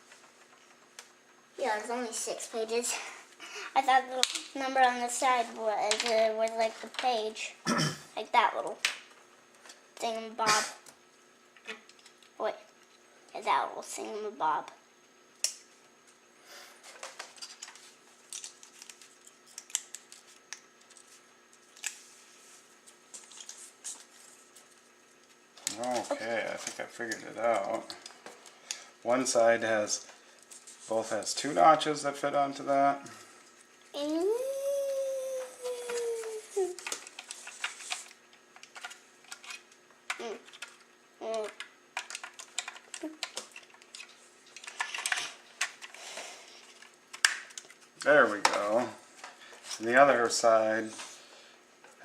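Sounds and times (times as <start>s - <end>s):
plastic parts clicking and rustling: 16.9s - 22.0s, 36.8s - 46.0s
person humming a tone: 34.2s - 36.8s.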